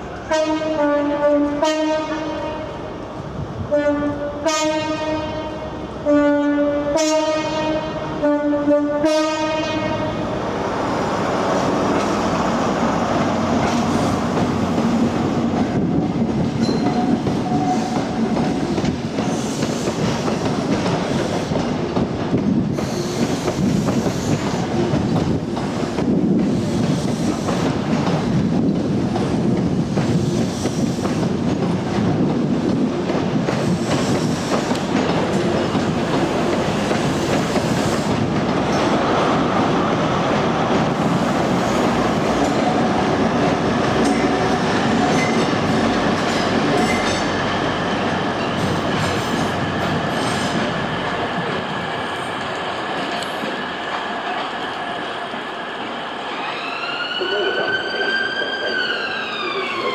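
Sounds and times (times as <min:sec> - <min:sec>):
train wheels clicking over joints: 0:11.0 - 0:55.6
wheels squealing on rail: 0:16.6 - 0:21.7, 0:22.7 - 0:24.7, 0:26.5 - 0:27.8, 0:33.5 - 0:39.4, 0:41.0 - 0:53.7, 0:56.3 - 0:59.9.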